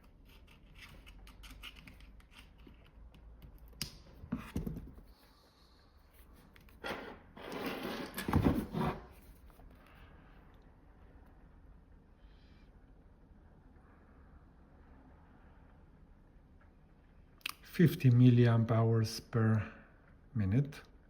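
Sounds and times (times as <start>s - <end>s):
cables and devices handled: 0.0s - 5.1s.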